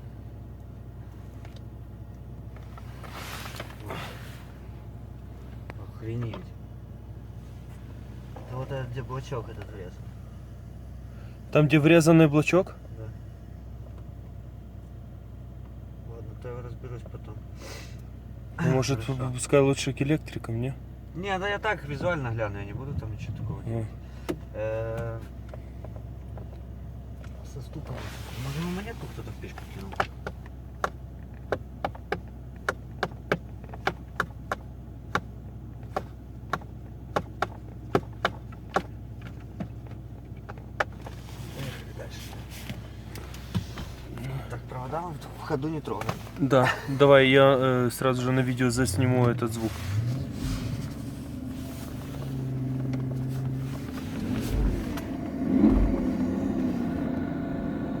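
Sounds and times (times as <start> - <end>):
idling engine hum: 0.0 - 58.0
sharp knocking in car cabin: 30.0 - 39.8
knocks and low thumps: 52.7 - 57.1.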